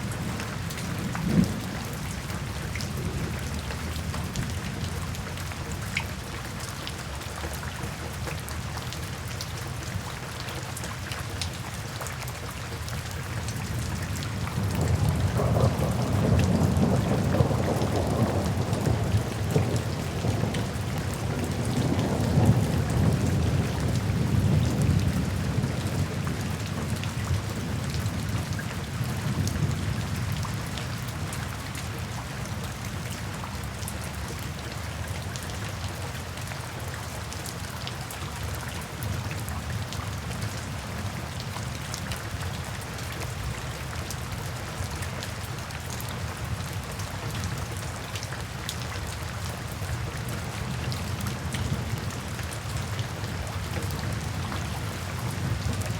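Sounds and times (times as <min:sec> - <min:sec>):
low rumble of thunder: 0:00.0 - 0:05.7, 0:13.7 - 0:34.7, 0:50.2 - 0:55.9
steady rainfall: 0:00.0 - 0:55.9.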